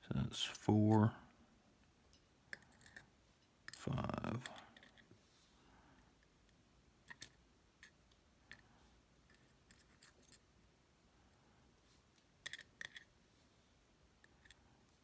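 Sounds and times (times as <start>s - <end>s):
small metallic clicks of lock parts: 2.1s - 5.1s, 6.2s - 8.7s, 9.3s - 10.5s, 12.4s - 13.1s, 14.2s - 14.6s.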